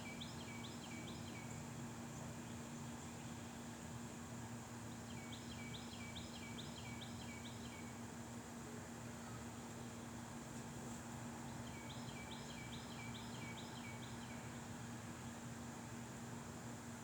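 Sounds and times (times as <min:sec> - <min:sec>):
small bird singing: 0:11.6 - 0:14.5.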